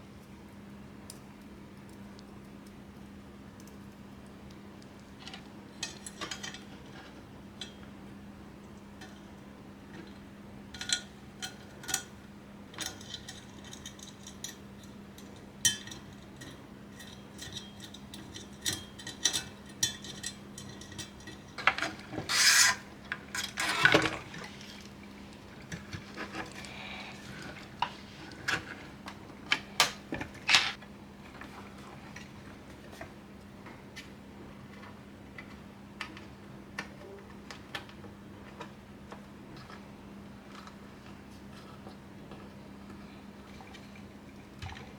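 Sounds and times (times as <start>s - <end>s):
metal hardware clicks and clinks: 15.2s - 22.7s
rubbing scrape: 22.2s - 22.9s.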